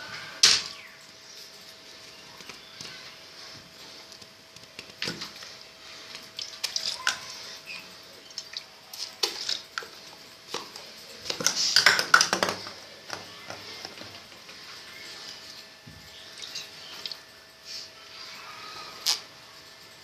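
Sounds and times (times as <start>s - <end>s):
faint steady hum: 0.0s - 20.0s
small objects clattering on a desk: 9.0s - 14.7s.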